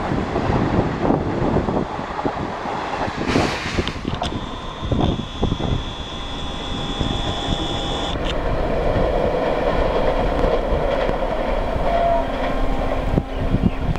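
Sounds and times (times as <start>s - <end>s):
train rushing past: 0.0s - 4.2s, 8.2s - 13.9s
thin high whine: 2.9s - 13.9s
wheels clicking on rails: 4.1s - 13.9s.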